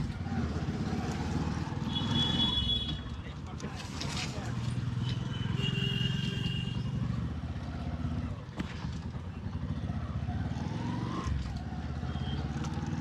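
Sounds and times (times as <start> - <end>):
motorcycle engine running: 4.6 - 13.0.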